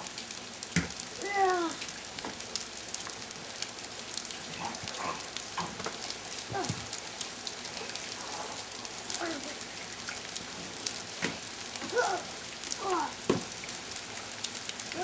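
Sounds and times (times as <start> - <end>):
rain pattering: 0.0 - 15.0
child vocal sounds: 1.2 - 1.9, 6.5 - 6.9, 9.1 - 9.7, 11.8 - 13.2
child squealing: 11.9 - 13.2.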